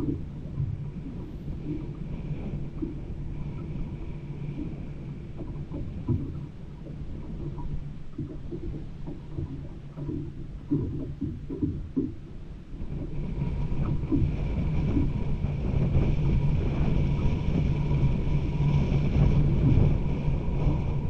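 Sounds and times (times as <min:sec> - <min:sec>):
low engine-like rumble: 0:00.0 - 0:21.0.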